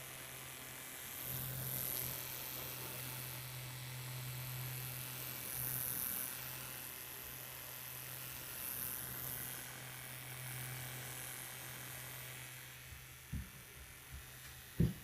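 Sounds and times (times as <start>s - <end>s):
handheld fan motor buzzing: 0.0s - 15.0s
soft knock: 14.8s - 15.0s.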